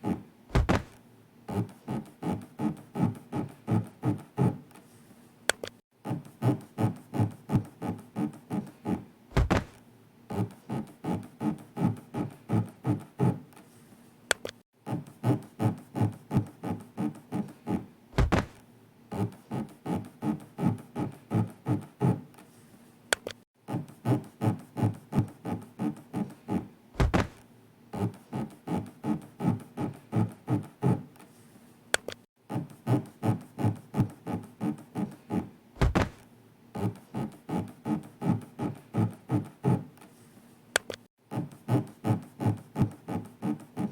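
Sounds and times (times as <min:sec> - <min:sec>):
heavy thud: 0:00.5 - 0:01.0, 0:09.4 - 0:09.8, 0:18.2 - 0:18.6, 0:27.0 - 0:27.4, 0:35.8 - 0:36.2.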